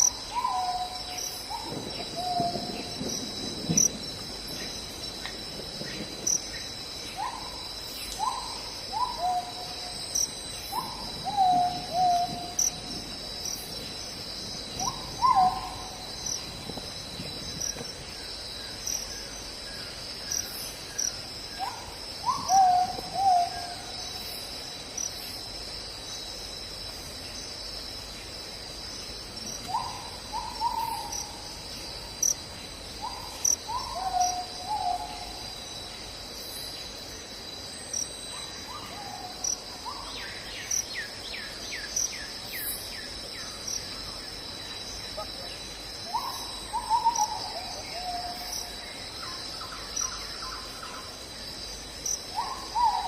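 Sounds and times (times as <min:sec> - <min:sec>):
night animal calls: 0:00.0 - 0:03.0, 0:14.8 - 0:16.4, 0:21.0 - 0:24.2, 0:29.4 - 0:31.5, 0:33.0 - 0:35.6, 0:45.1 - 0:51.2, 0:52.0 - 0:53.0
insects trilling: 0:00.0 - 0:53.0.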